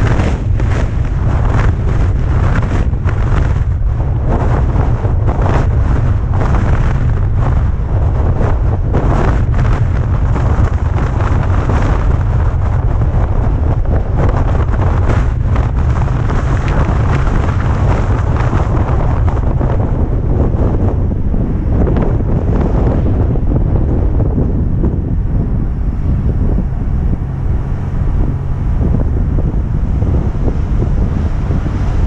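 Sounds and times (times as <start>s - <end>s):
wind buffeting microphone: 0.0s - 32.0s.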